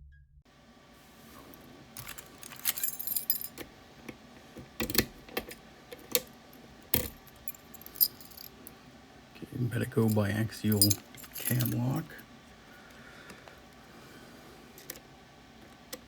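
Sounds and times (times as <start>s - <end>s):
small metal parts clinking: 2.0s - 3.7s, 4.8s - 8.8s, 10.0s - 12.2s, 14.8s - 15.0s.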